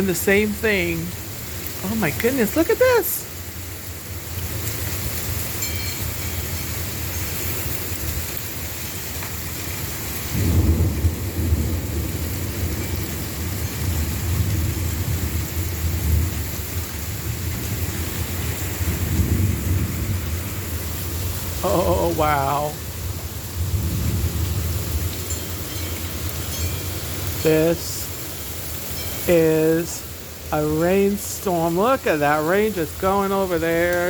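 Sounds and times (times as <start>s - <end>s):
heavy rain: 0.0s - 34.0s
rolling thunder: 10.1s - 25.3s.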